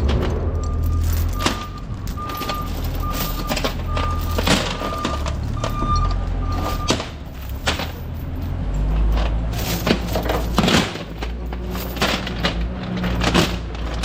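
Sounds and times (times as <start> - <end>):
low engine rumble: 0.0 - 14.0
sharp knocks and clanks: 0.0 - 14.0
vehicle reversing alarm beeping: 0.4 - 7.6.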